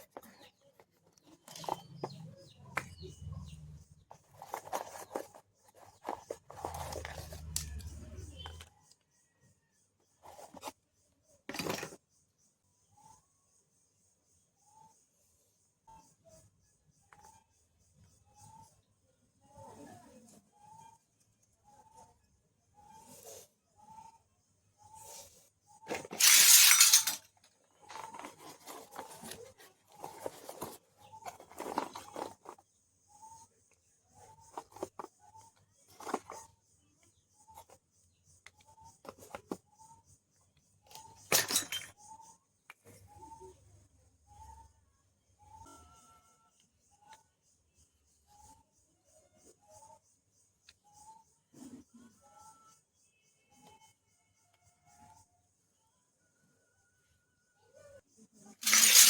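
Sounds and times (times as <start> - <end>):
plastic toy pieces clicking: 26.0 - 27.3, 58.6 - 59.0
packaging rustling: 58.6 - 59.0.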